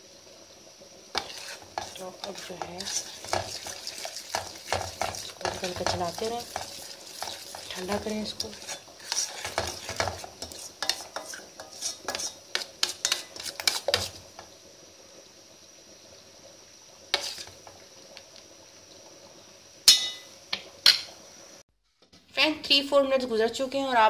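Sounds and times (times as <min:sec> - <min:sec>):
spoon stirring thick syrup: 0:01.2 - 0:14.1
spoon clinking on pot: 0:19.9 - 0:20.3.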